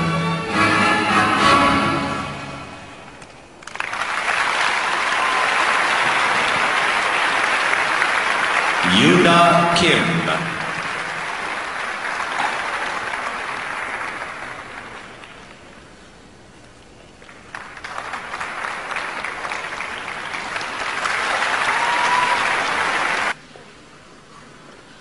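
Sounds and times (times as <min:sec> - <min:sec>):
crowd applauding: 0:03.1 - 0:15.9, 0:17.1 - 0:23.4.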